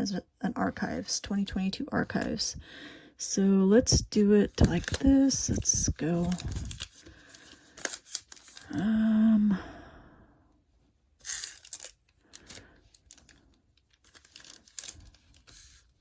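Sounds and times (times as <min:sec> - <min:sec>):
foil wrappers crinkling: 0:03.9 - 0:08.8, 0:11.2 - 0:16.0
person humming: 0:08.7 - 0:09.8.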